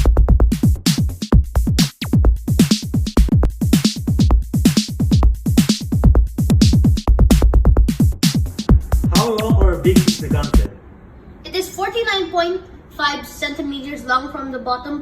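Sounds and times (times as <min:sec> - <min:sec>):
electronic dance music: 0:00.0 - 0:10.7.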